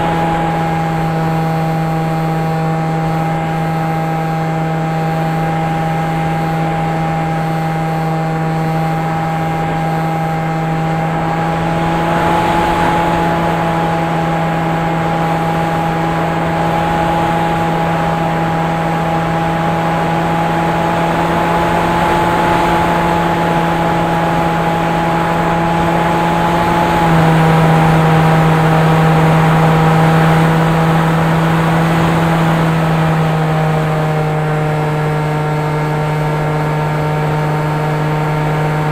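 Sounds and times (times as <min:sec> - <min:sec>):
quadcopter motors humming: 0:00.0 - 0:38.9.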